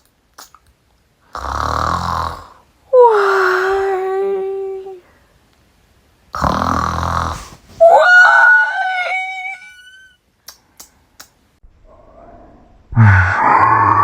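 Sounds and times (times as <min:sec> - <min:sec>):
person voicing a cartoon yawn: 0:02.9 - 0:05.1
faint clicks: 0:10.4 - 0:11.4.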